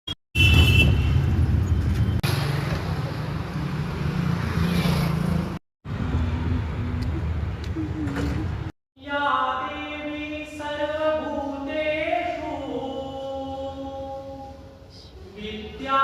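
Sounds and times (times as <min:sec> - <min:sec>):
engine and road rumble: 0:00.4 - 0:08.8.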